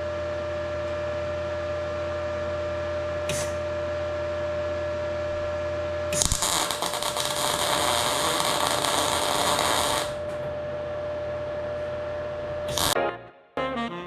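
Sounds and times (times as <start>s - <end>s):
steady electrical hum: 0.0s - 13.0s
power tool running: 6.1s - 10.4s.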